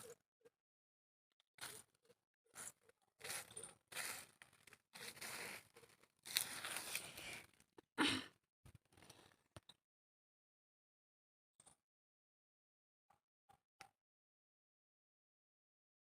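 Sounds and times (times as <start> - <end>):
faint scraping and tearing: 2.6 - 7.6.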